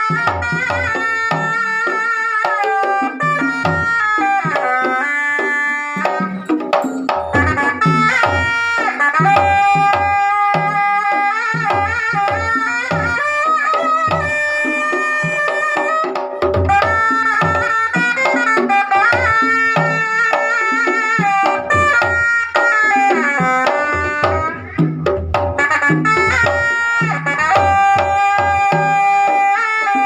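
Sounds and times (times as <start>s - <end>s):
hand drums beating: 0.0s - 30.0s
sliding melodic line: 4.4s - 9.2s.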